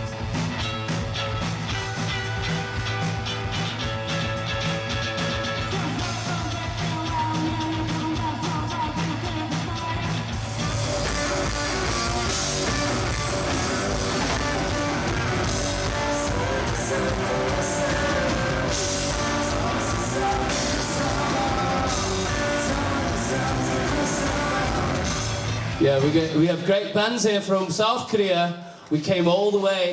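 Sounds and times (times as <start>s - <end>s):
rock music with singing and guitar: 0.0s - 29.9s.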